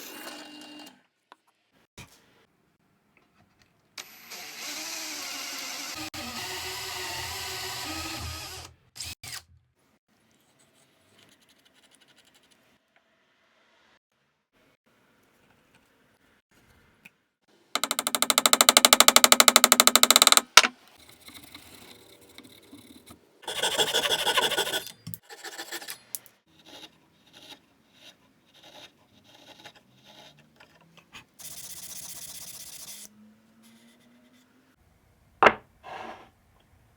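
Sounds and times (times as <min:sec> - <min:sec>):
knocks and clicks of wood: 0:17.8 - 0:20.7
cutting or sanding noise: 0:21.6 - 0:30.6.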